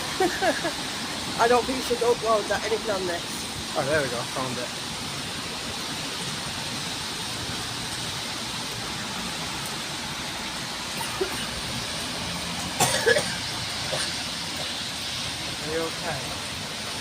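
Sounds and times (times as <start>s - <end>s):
outdoor background hiss: 0.0s - 17.0s.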